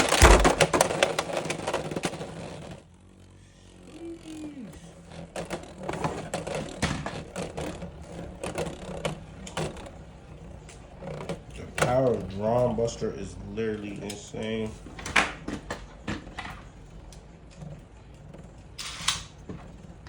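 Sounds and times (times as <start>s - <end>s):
spinning tops hitting: 0.0s - 2.8s
low spinning hum: 0.0s - 20.0s
tops clicking and rattling: 0.0s - 20.0s.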